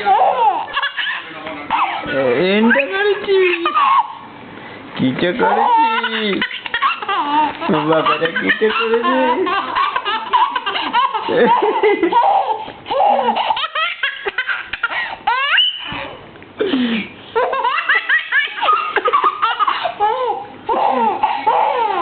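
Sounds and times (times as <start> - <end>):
baby laughing and squealing: 0.0 - 4.2, 5.4 - 16.2, 17.4 - 22.0.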